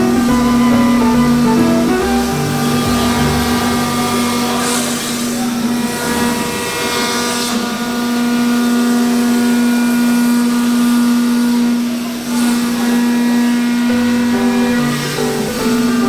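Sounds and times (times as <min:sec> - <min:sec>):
milling machine cutting wood: 0:00.0 - 0:08.6, 0:12.3 - 0:16.0.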